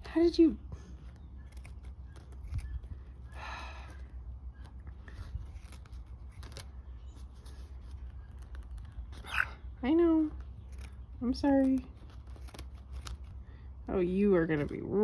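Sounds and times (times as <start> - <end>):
scissors snipping feathers: 1.1 - 3.2.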